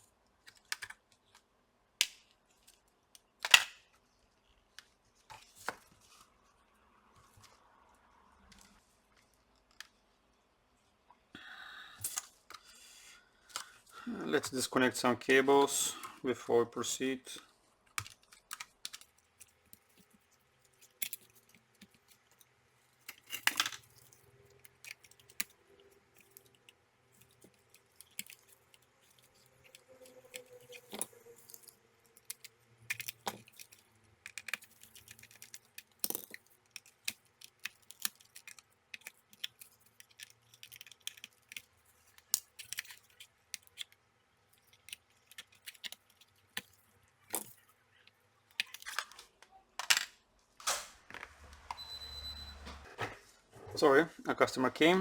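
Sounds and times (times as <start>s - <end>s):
tools clicking on laptop internals: 17.9s - 46.8s.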